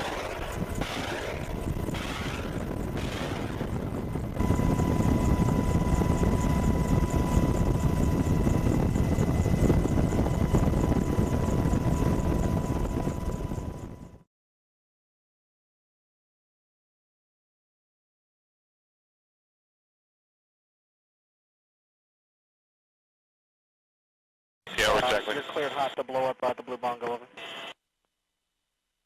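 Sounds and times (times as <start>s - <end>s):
helicopter rotor and turbine: 0.0s - 14.3s.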